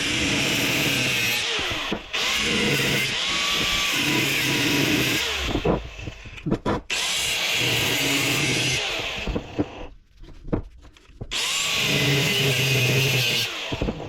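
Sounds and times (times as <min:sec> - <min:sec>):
power tool cutting steel: 0:00.0 - 0:05.7, 0:06.9 - 0:09.8, 0:11.3 - 0:14.0.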